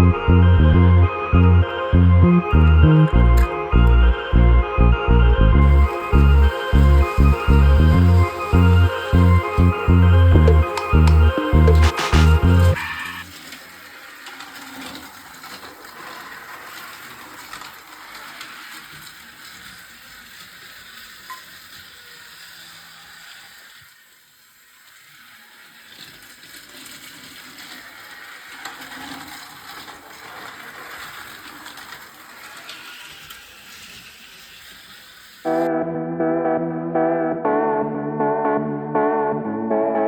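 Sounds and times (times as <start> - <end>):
small mechanism clicking and whirring: 13.2 - 35.5.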